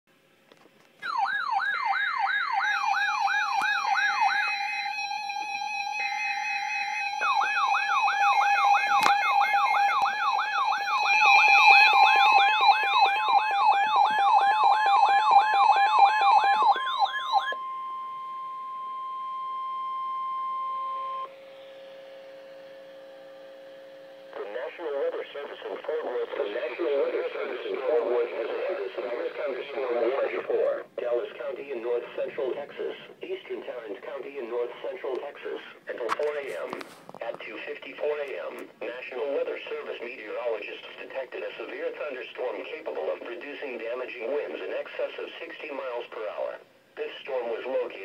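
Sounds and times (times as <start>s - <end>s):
warbling siren tone: 1.0s - 24.4s
steady alarm tones: 1.0s - 35.4s.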